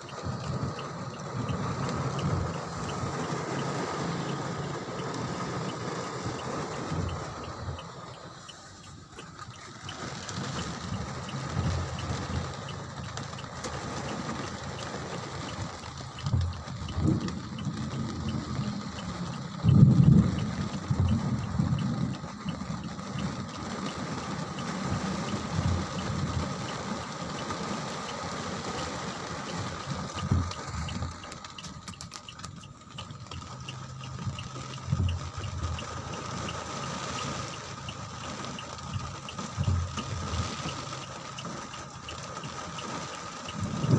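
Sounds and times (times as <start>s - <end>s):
rain pouring: 0.0s - 43.9s
low rumbles: 13.2s - 22.3s.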